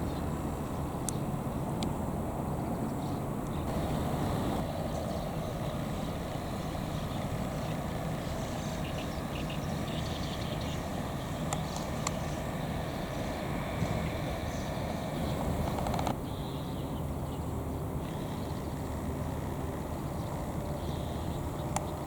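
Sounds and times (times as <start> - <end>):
low vehicle rumble: 0.0 - 16.2
faint clicks: 11.5 - 12.2.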